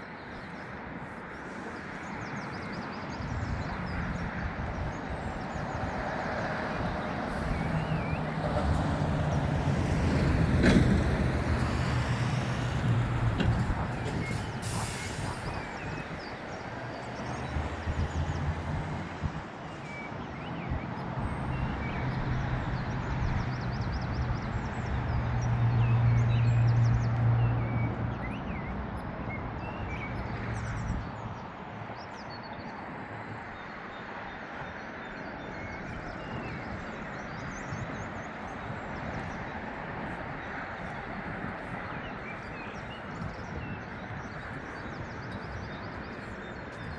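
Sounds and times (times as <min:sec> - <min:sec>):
vehicle engine hum: 0:00.0 - 0:15.8
outdoor road ambience: 0:00.0 - 0:46.9
small birds chirping: 0:33.4 - 0:46.9.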